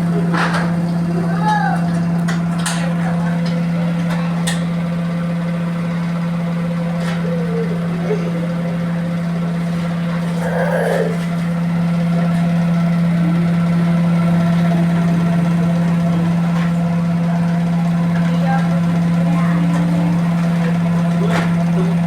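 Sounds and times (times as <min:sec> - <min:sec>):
washing machine spinning: 0:00.0 - 0:22.0.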